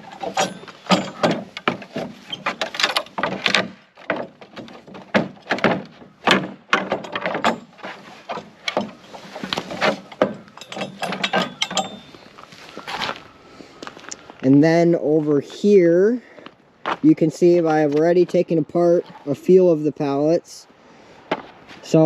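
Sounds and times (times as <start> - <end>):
nails squeaking: 0.0 - 13.2
wood creaking and cracking: 0.0 - 14.5.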